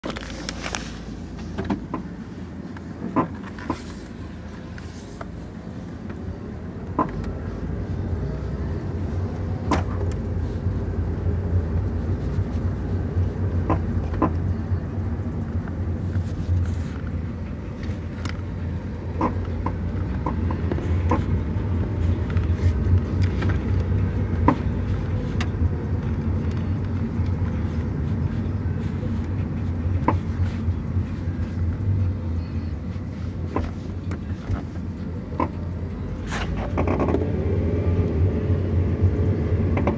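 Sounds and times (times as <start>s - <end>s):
car rolling low rumble: 0.0s - 39.9s.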